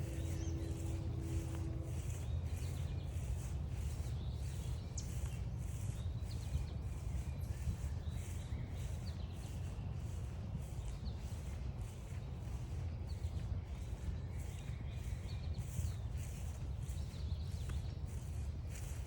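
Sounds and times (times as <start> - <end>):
low rumble: 0.0 - 6.3
footsteps crunching on trail: 0.0 - 19.0
small birds chirping: 0.0 - 19.0.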